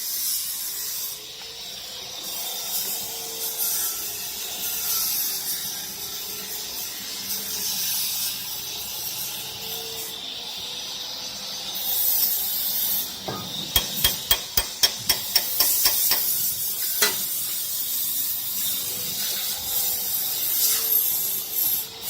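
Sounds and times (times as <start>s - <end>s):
sharp metallic clicks: 13.8s - 16.5s.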